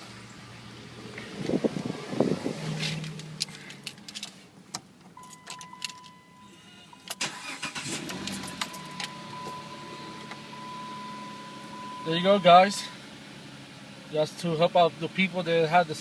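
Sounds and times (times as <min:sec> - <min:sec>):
car engine cranking and starting: 0:00.0 - 0:15.6
car engine idling: 0:00.0 - 0:16.0
steady high beep: 0:08.8 - 0:13.0.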